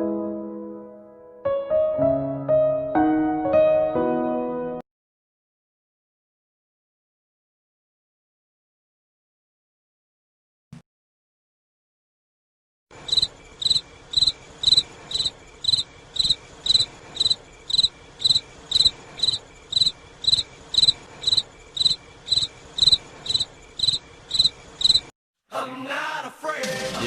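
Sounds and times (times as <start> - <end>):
cricket chirping: 12.9 - 25.1.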